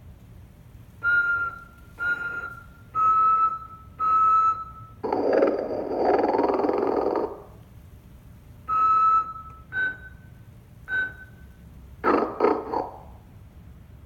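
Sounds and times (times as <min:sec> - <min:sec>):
toy speaker breathy whistles: 0:01.1 - 0:03.4.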